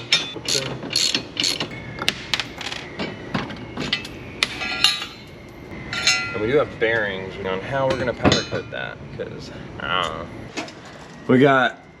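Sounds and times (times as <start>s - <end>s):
ringing metallic knocks: 0.0s - 7.1s, 7.8s - 8.8s.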